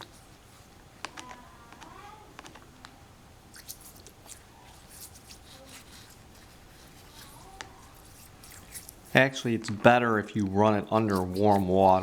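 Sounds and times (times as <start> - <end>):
brush scrubbing metal: 4.2 - 9.3, 10.9 - 12.0.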